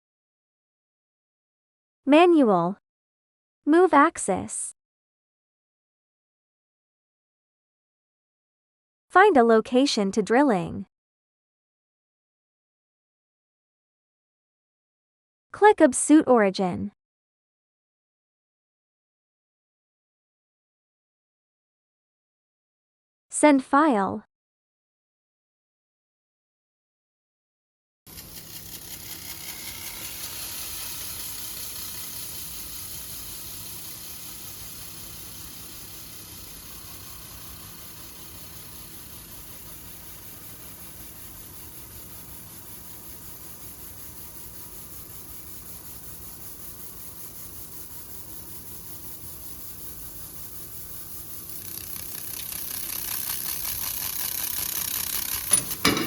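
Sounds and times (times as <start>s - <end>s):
laser crackling hiss on glass: 28.1s - 56.0s.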